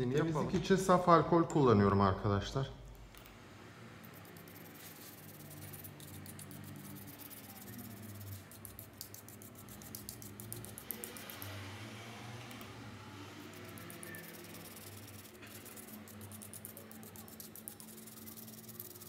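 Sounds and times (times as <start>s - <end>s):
scratchy scrubbing on circuit board: 4.2s - 11.6s, 13.4s - 19.0s.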